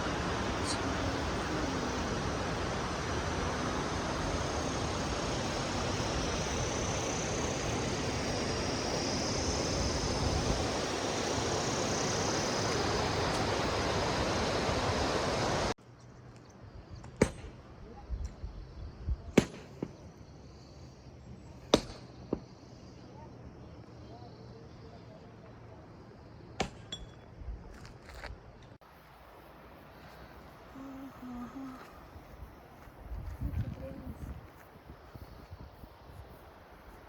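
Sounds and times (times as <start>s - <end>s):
heavy rain hissing: 0.0s - 15.8s.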